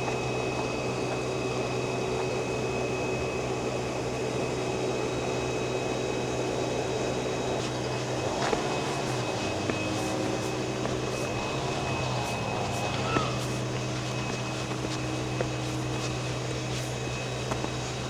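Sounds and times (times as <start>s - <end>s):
low mechanical hum: 0.0s - 18.0s
high whine: 6.5s - 18.0s.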